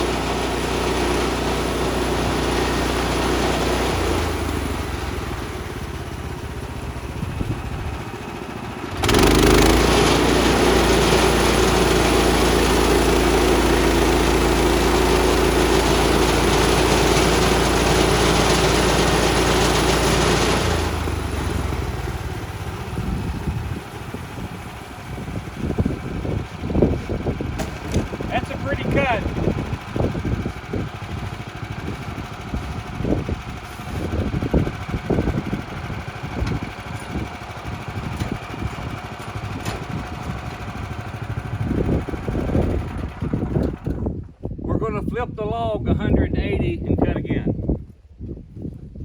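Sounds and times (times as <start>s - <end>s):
band saw cutting log: 0.0s - 5.6s, 8.9s - 23.0s, 27.6s - 29.6s
gasoline engine running: 0.0s - 44.5s.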